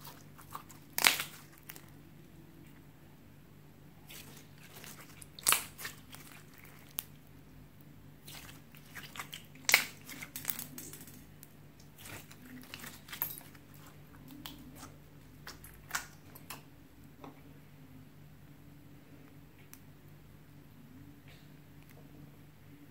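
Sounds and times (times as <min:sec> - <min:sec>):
hands kneading slime: 0:00.0 - 0:02.1, 0:03.9 - 0:16.7.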